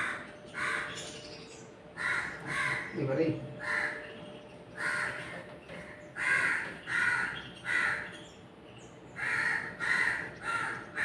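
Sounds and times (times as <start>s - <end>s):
crow cawing: 0.0s - 1.2s, 1.9s - 4.2s, 4.8s - 8.2s, 9.2s - 11.0s.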